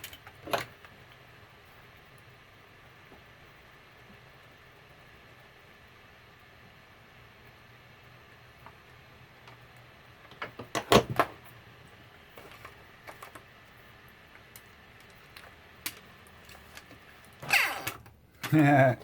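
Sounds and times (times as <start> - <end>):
small parts clicking and knocking: 0.0 - 1.2.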